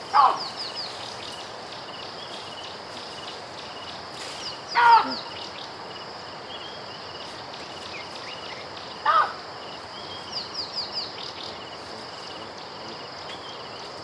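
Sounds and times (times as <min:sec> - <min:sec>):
baboon call: 0:00.0 - 0:00.7, 0:04.7 - 0:05.4, 0:09.0 - 0:09.4
birds singing: 0:00.0 - 0:14.0
insect drone: 0:00.0 - 0:14.0.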